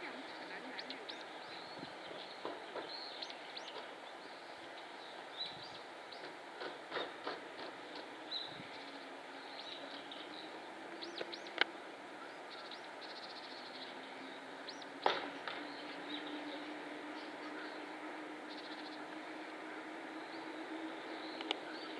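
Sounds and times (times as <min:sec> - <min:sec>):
steady low hum: 0:00.0 - 0:21.9.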